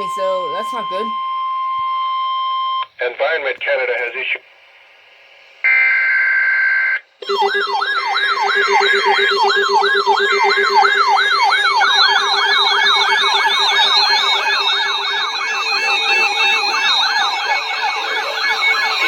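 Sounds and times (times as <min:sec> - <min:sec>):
steady lower tone: 0:00.0 - 0:02.6
electronic siren alarm sweeps: 0:00.0 - 0:03.0, 0:05.6 - 0:19.0.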